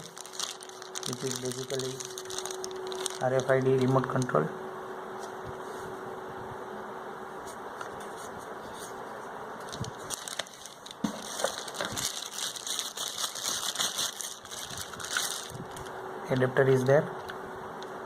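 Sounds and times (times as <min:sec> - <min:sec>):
plastic packaging crinkling: 0:00.0 - 0:04.5, 0:09.6 - 0:15.9.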